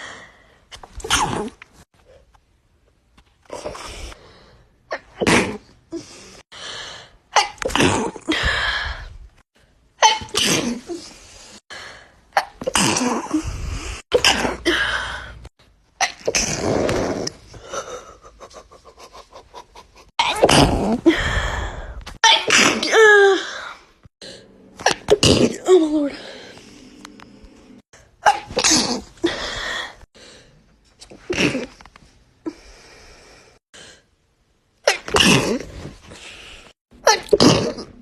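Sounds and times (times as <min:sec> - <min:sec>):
person sneezing: 0:10.0 - 0:11.0.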